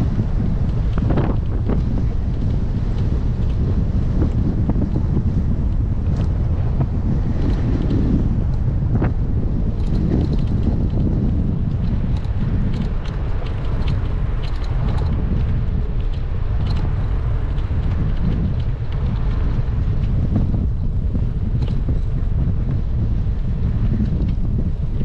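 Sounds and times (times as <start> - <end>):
wind buffeting microphone: 0.0 - 25.0
faint ticks: 9.8 - 20.2, 21.5 - 22.1.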